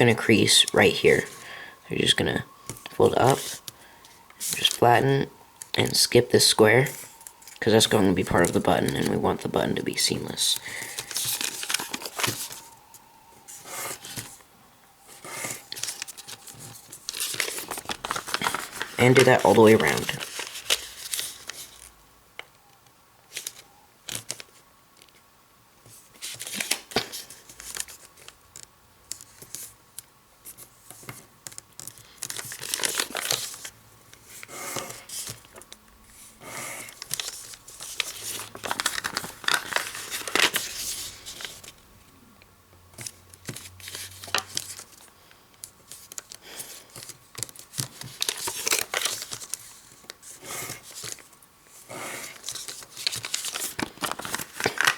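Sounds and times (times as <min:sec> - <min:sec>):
paper being folded and creased: 0:04.4 - 0:04.9, 0:05.7 - 0:12.7, 0:15.1 - 0:21.9, 0:25.9 - 0:29.7, 0:30.5 - 0:41.8, 0:43.0 - 0:45.1, 0:45.7 - 0:54.9.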